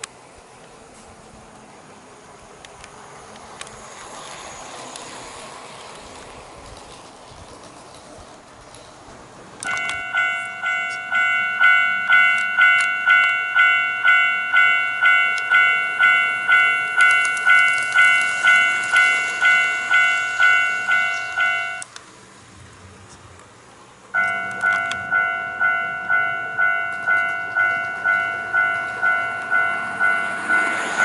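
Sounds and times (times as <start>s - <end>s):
electronic crossing bell ringing: 9.6s - 21.9s, 24.2s - 31.0s.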